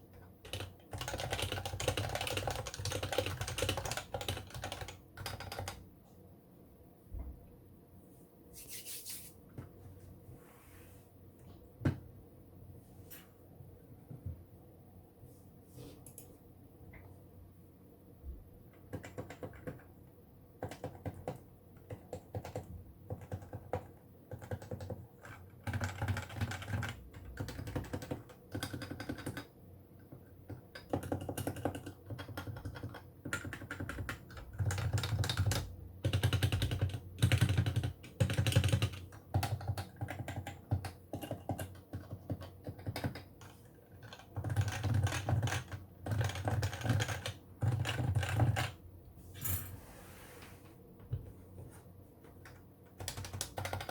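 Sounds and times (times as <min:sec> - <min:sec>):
keyboard typing: 0:00.1 - 0:05.8, 0:18.8 - 0:19.9, 0:20.6 - 0:48.8, 0:52.4 - 0:53.9.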